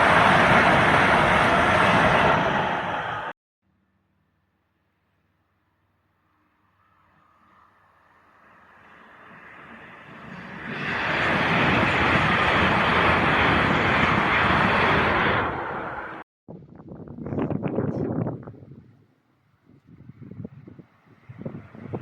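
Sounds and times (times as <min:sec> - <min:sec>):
train passing: 0:00.0 - 0:03.3, 0:06.3 - 0:16.2.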